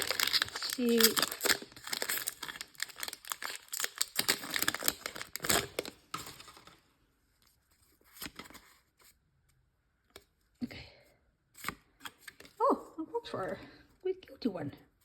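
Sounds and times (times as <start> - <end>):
foil wrapper crinkling and tearing: 0.0 - 6.8.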